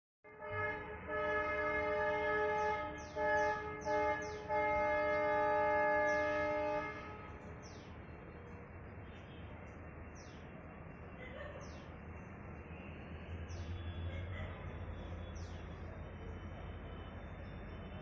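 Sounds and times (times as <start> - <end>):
locomotive horn blasts: 0.3 - 7.4.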